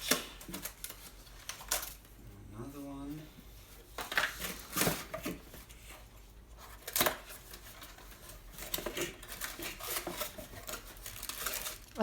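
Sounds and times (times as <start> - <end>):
packaging rustling and crinkling: 3.8 - 12.0.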